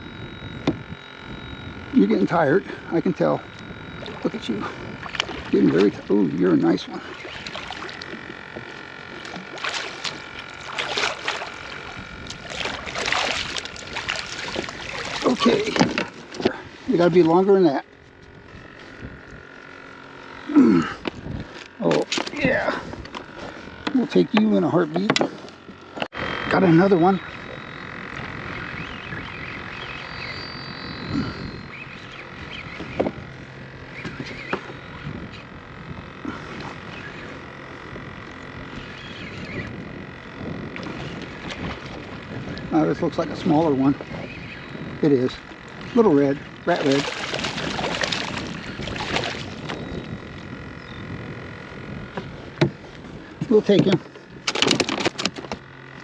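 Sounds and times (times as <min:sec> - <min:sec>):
fish splashing water: 0:07.1 - 0:15.9, 0:46.8 - 0:49.9
short chirping calls: 0:28.4 - 0:33.0.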